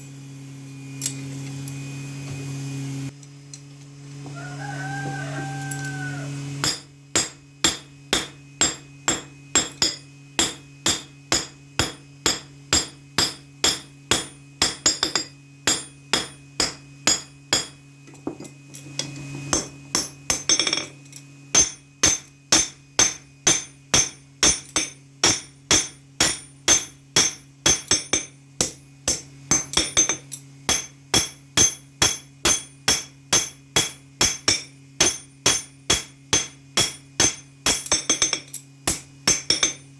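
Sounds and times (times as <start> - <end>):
steady low hum: 5.3 - 39.9
hammer blows on anvil: 6.6 - 39.9.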